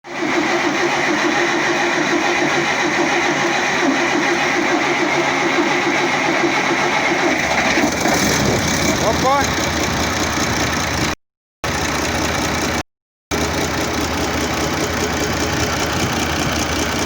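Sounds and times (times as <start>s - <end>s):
diesel engine idling: 0.1s - 17.0s
dull engine knock: 8.4s - 17.0s.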